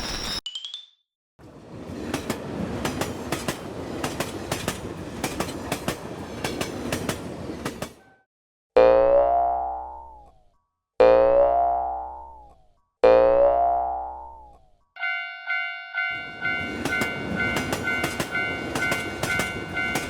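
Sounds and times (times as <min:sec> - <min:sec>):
train rushing rumble: 0:01.4 - 0:08.0, 0:16.2 - 0:20.0
train wheels clacking over rail joints: 0:01.9 - 0:08.0, 0:16.7 - 0:20.0
cartoon twang: 0:08.8 - 0:10.4, 0:11.0 - 0:14.7.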